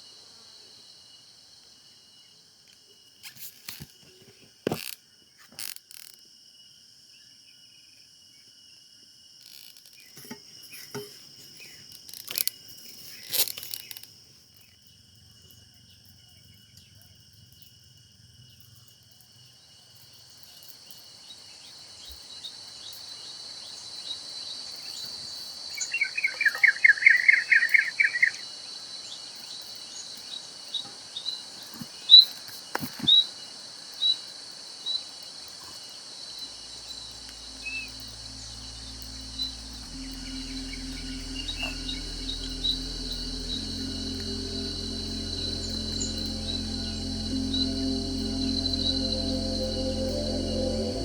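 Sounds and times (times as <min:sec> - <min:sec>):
insects droning: 0:00.0 - 0:51.0
low music: 0:36.5 - 0:51.0.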